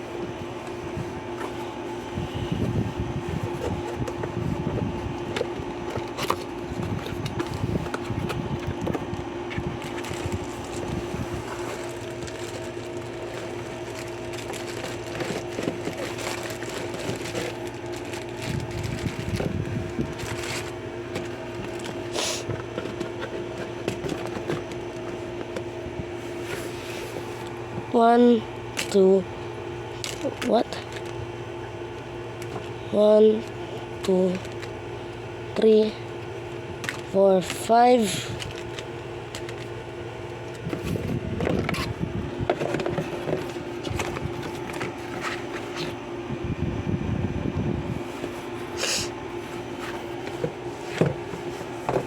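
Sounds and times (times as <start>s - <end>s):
steady hum: 0.0s - 52.0s
packaging crinkling and rustling: 3.3s - 27.6s, 30.0s - 31.2s, 38.3s - 46.0s.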